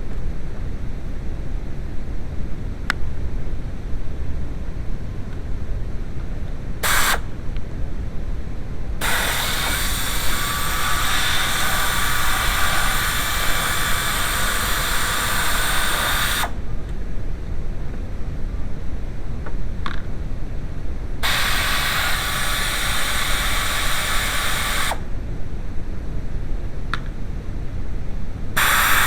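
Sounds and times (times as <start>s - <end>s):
low steady rumble: 0.0s - 28.6s
pressurised spray hissing: 6.8s - 7.3s, 9.0s - 16.6s, 21.2s - 25.2s, 28.6s - 29.0s.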